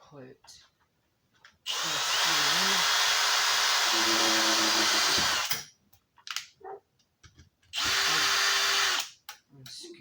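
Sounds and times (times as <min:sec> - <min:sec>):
power drill driving a screw: 0:01.7 - 0:05.6, 0:07.8 - 0:09.2.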